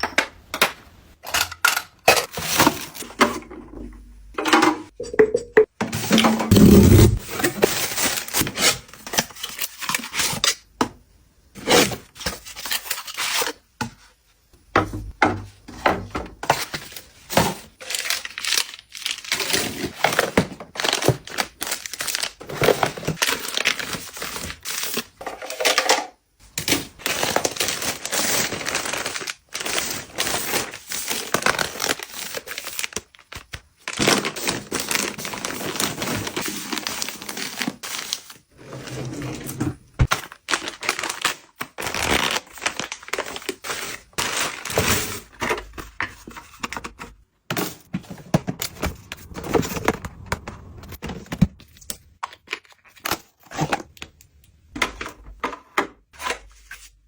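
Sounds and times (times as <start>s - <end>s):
packaging crinkling and tearing: 17.8s - 25.0s, 27.0s - 38.4s, 40.0s - 45.4s.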